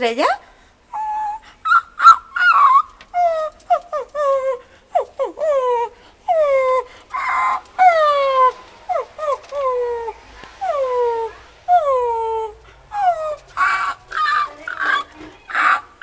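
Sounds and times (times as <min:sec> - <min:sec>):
woman imitating animal cries: 0:01.0 - 0:16.0.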